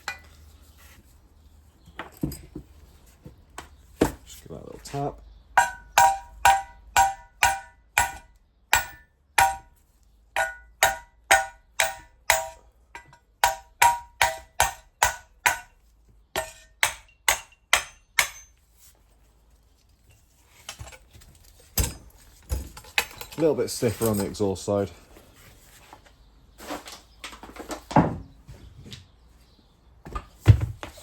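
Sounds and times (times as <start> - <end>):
hammer striking metal housing: 5.6 - 8.2, 8.8 - 9.7, 10.4 - 15.7.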